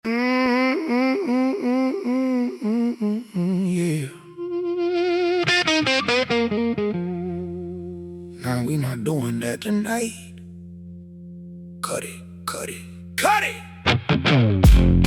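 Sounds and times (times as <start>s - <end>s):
person humming a melody: 0.0s - 5.5s.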